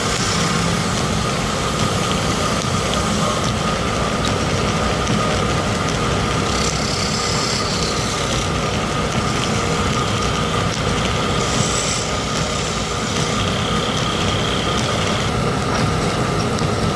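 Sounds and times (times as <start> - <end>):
hissing scrapes on spinning wood: 0.0 - 1.2, 6.4 - 8.6, 11.2 - 15.3
wood lathe humming and whining: 0.0 - 16.9.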